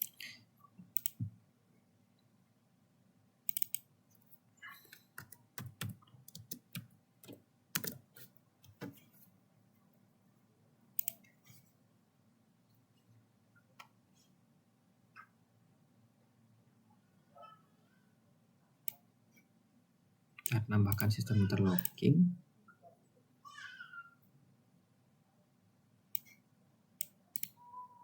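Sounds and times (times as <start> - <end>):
mouse clicks: 1.0 - 1.3, 3.5 - 3.9, 11.0 - 11.2, 26.2 - 26.4, 27.0 - 27.6
keyboard keystrokes: 5.0 - 8.1.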